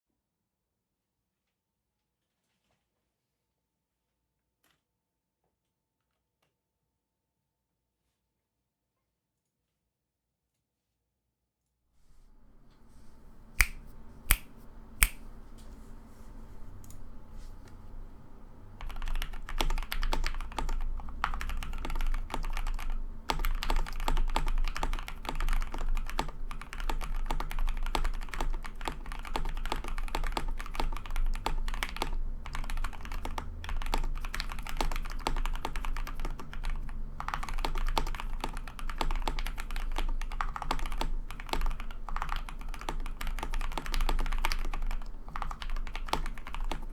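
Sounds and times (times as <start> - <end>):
mechanical keyboard typing: 12.4 - 46.9.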